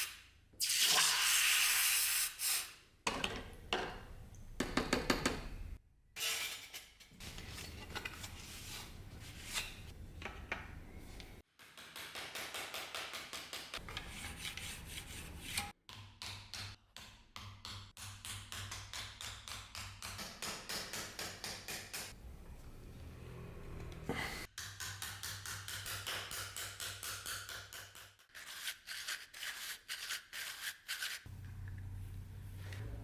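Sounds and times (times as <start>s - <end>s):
hand tool scraping strokes: 13.8s - 15.8s, 28.3s - 31.3s.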